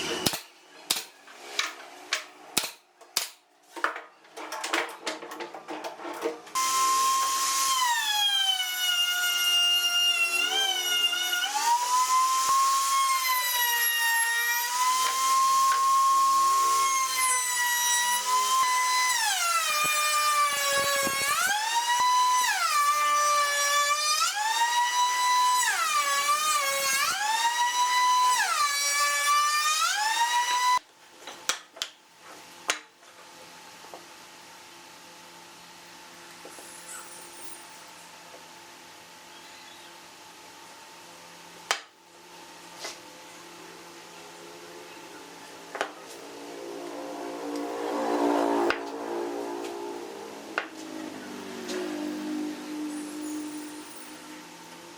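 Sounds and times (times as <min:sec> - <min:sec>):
power tool motor whining: 0:06.6 - 0:23.4, 0:46.2 - 0:54.4.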